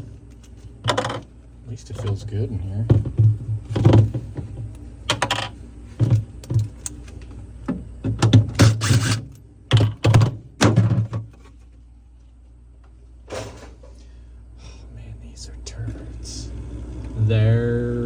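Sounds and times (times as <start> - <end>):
plastic and metal parts clattering: 0.0 - 1.3, 2.9 - 7.2, 8.1 - 11.6.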